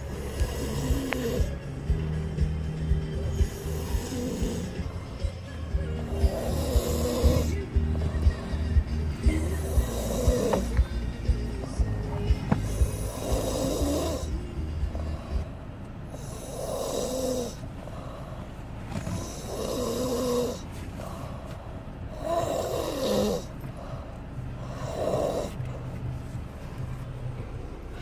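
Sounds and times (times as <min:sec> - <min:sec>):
person snoring: 0:00.0 - 0:01.6, 0:03.2 - 0:05.3, 0:06.0 - 0:11.1, 0:12.6 - 0:14.4, 0:16.1 - 0:17.6, 0:19.1 - 0:20.6, 0:22.2 - 0:23.5, 0:24.6 - 0:25.6.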